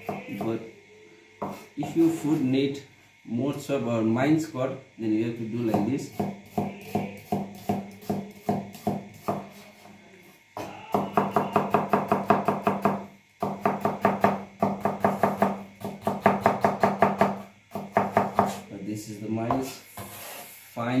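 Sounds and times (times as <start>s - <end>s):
knife chopping on cutting board: 1.4s - 2.2s, 5.7s - 9.6s, 10.6s - 18.6s.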